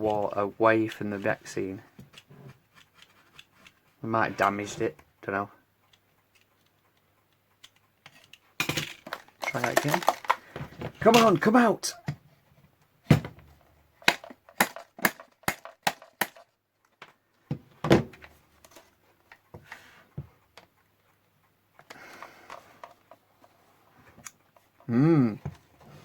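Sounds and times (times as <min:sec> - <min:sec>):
blade clicking and knocking: 0:14.0 - 0:16.6.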